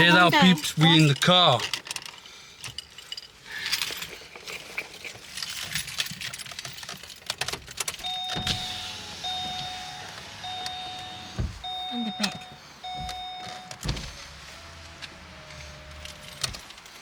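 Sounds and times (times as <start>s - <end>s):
car warning chime: 0.0s - 1.3s, 8.0s - 16.8s
car keys jangling: 0.1s - 17.0s.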